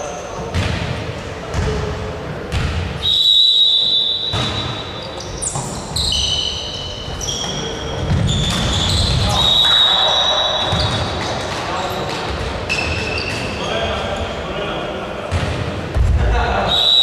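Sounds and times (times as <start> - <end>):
basketball bouncing on court: 2.5 - 3.0, 10.6 - 13.5, 15.3 - 16.1
shoes squeaking on floor: 3.0 - 14.2.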